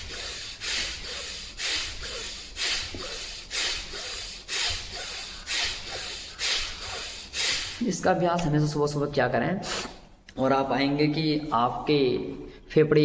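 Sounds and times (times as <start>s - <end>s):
forceful breathing through the nose: 0.0s - 7.9s, 9.6s - 10.2s.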